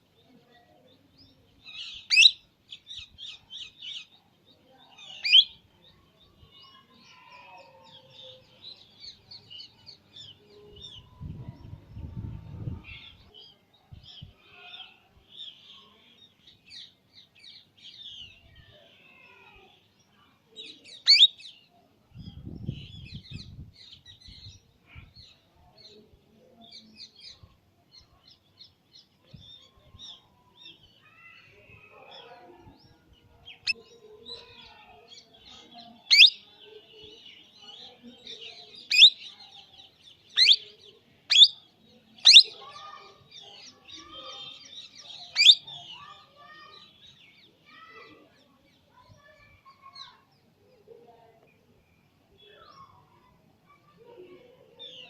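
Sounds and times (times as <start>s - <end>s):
parrot chattering chirps: 21.1s - 21.3s, 36.1s - 36.4s, 38.9s - 39.2s, 40.4s - 40.6s, 41.3s - 41.6s, 42.2s - 42.6s, 45.3s - 45.7s.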